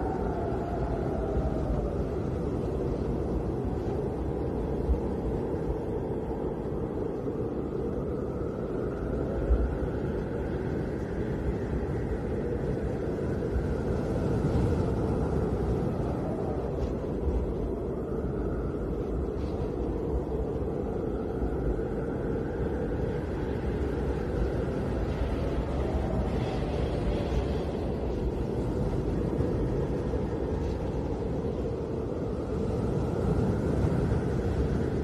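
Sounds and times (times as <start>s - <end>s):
hollow wind howl: 0.0s - 35.0s
strong wind with low rumble: 0.0s - 35.0s.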